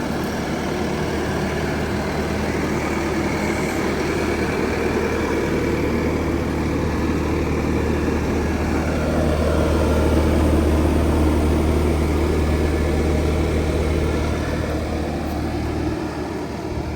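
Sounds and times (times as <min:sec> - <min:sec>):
diesel engine running: 0:00.0 - 0:16.9.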